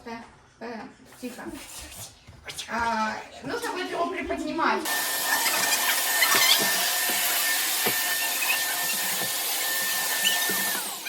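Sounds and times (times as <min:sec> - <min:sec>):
vacuum cleaner whining: 0:03.5 - 0:11.0.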